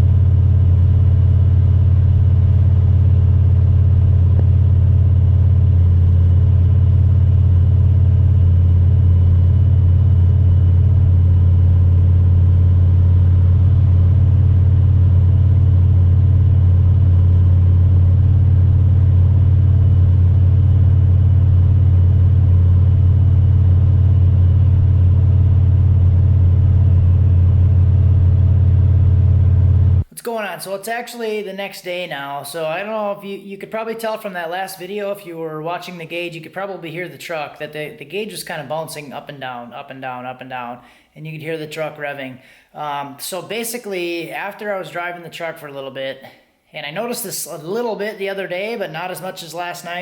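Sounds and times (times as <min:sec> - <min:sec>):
truck engine droning: 0:00.0 - 0:30.1.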